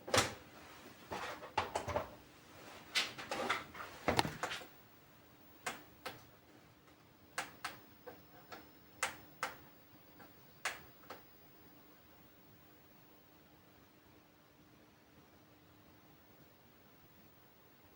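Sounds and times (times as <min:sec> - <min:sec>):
faint steady hum: 0:00.0 - 0:17.9
sharp clicks and knocks: 0:07.4 - 0:09.6.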